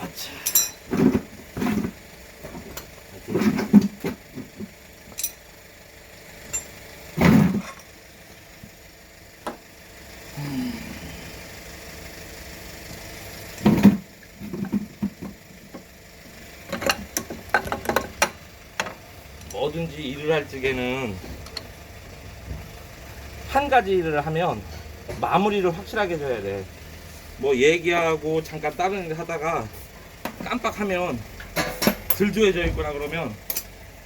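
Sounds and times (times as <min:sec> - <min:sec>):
metal tools clinking: 0:00.3 - 0:00.9, 0:05.1 - 0:05.4.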